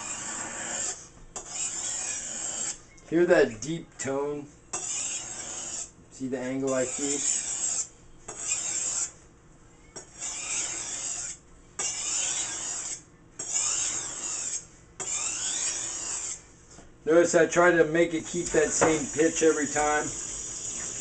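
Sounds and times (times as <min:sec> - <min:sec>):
knife drawn across sharpener: 0:00.0 - 0:02.8, 0:04.8 - 0:05.9, 0:06.7 - 0:09.2, 0:10.0 - 0:16.4.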